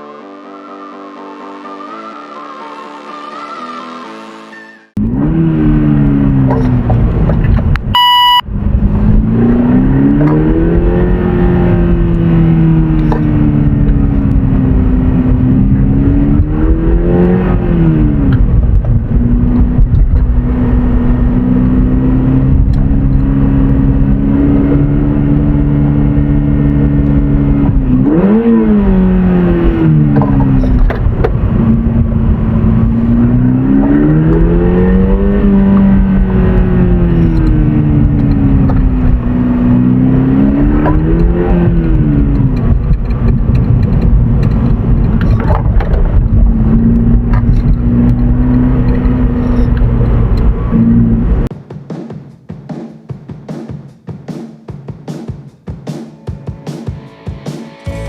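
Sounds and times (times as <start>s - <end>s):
car engine revving while driving: 5.0s - 51.5s
beep-like tone: 7.9s - 8.5s.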